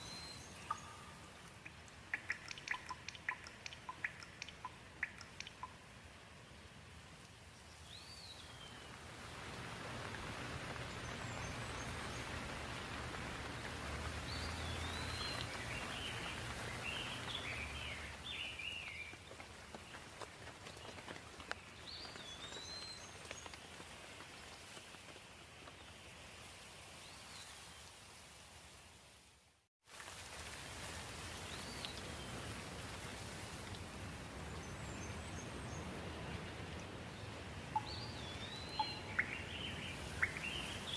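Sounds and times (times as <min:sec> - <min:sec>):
bird chirping: 0:00.0 - 0:05.8, 0:37.7 - 0:40.9
steady rain falling: 0:00.0 - 0:40.9.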